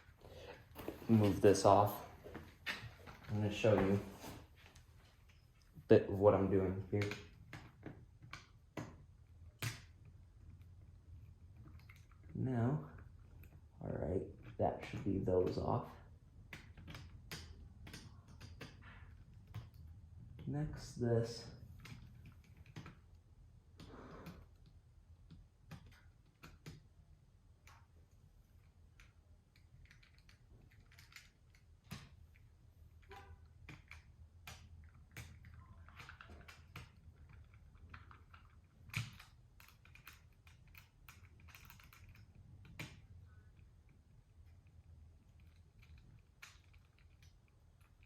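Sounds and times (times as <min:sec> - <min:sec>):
plastic parts clicking and tapping: 0:28.9 - 0:48.0.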